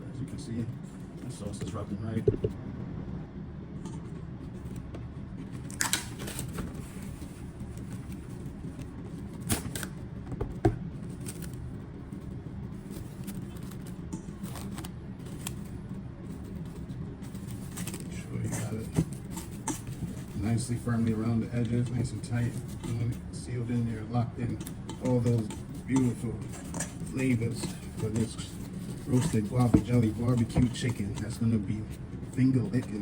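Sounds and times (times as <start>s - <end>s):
steady low hum: 0.0s - 33.0s
knock: 2.2s - 2.6s.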